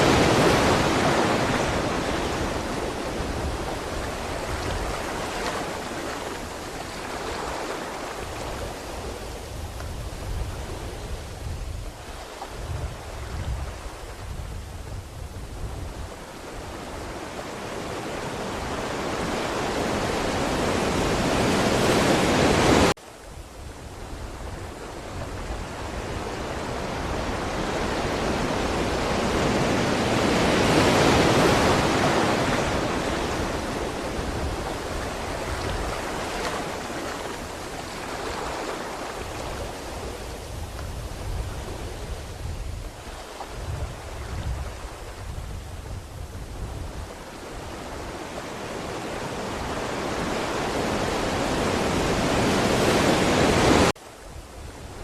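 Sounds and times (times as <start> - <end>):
ocean surf waves: 0.0 - 55.0.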